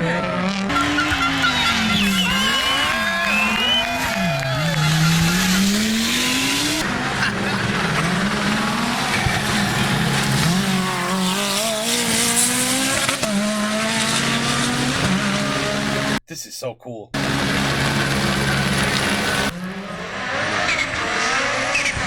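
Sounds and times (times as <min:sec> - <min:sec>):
car engine at steady revs: 0:00.0 - 0:16.2, 0:17.2 - 0:22.0
rally car engines revving: 0:00.0 - 0:16.2, 0:17.2 - 0:22.0
tyre skid noise: 0:00.0 - 0:16.2, 0:17.2 - 0:22.0.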